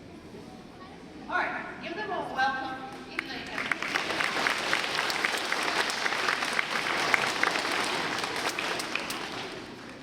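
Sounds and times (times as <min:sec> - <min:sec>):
audience applauding: 0:03.4 - 0:10.0.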